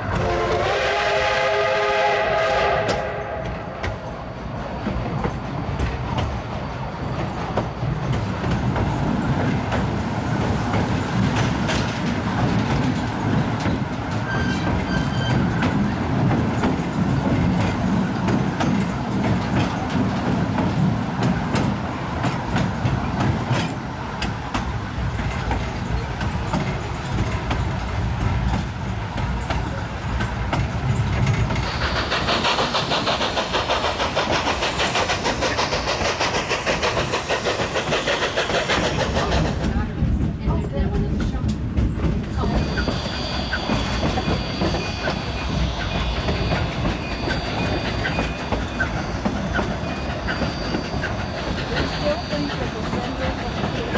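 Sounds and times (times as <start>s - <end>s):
steam train rumbling: 0.0s - 53.9s
steady hiss: 31.2s - 39.6s.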